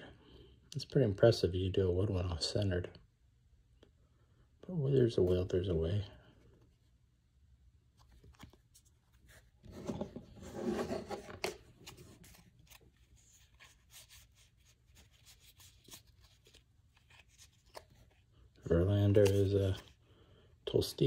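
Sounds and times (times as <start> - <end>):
cards rubbing and scraping: 8.2 - 18.2.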